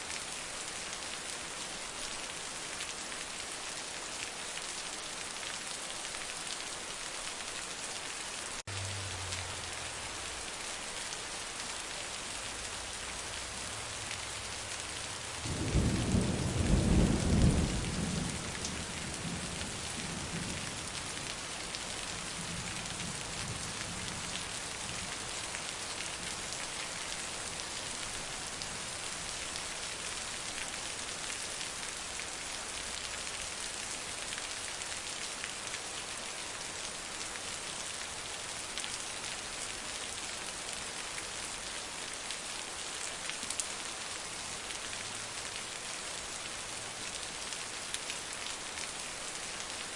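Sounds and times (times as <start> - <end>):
heavy rain hissing: 8.6 - 31.2
low rumble of thunder: 15.3 - 21.5.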